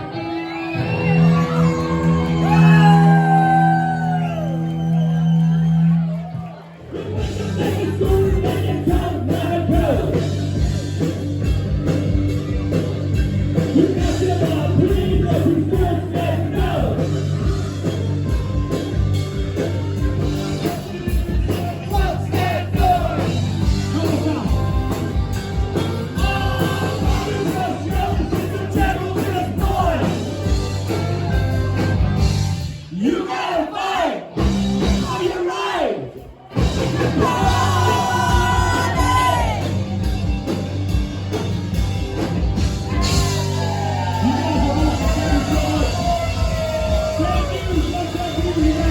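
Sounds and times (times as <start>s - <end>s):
bass guitar: 0.0s - 33.0s, 34.3s - 35.4s, 36.1s - 48.9s
rock band playing: 0.0s - 33.0s, 34.3s - 48.9s
drum beat: 7.1s - 32.6s, 36.6s - 48.9s
person singing: 26.0s - 30.4s, 37.0s - 39.7s.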